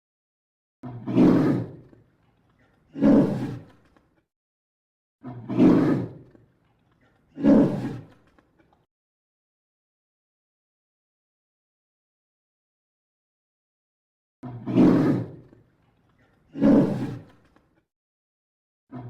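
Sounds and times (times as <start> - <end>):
polar bear roaring: 1.0 - 2.0, 2.9 - 3.7, 5.4 - 6.3, 7.3 - 8.2, 14.6 - 15.6, 16.5 - 17.3.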